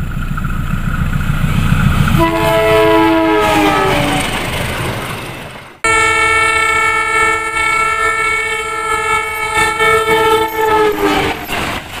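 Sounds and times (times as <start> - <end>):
train horn blast: 2.2 - 4.4, 5.8 - 11.6.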